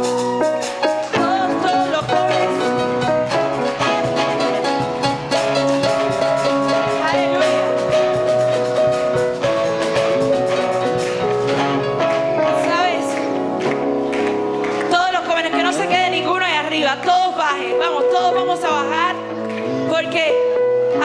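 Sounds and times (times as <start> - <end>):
drum kit beat: 0.0 - 15.4
worship band playing: 0.0 - 17.2.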